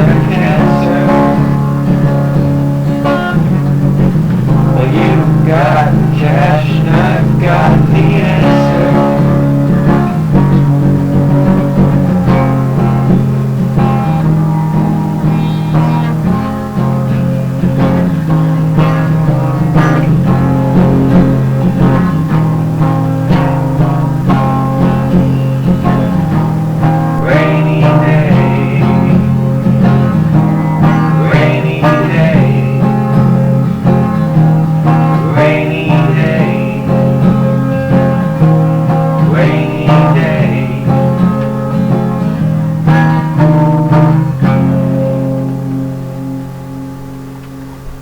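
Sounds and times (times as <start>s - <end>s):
bass line: 0.0s - 48.0s
guitars: 0.0s - 48.0s.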